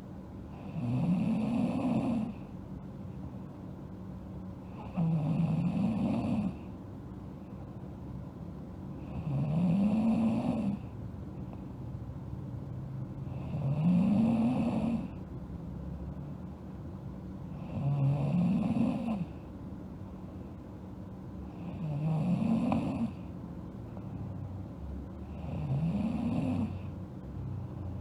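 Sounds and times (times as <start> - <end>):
girl snoring: 0.6 - 2.4, 4.8 - 6.7, 9.0 - 10.8, 13.3 - 15.1, 17.6 - 19.4, 21.5 - 23.2, 25.3 - 26.9.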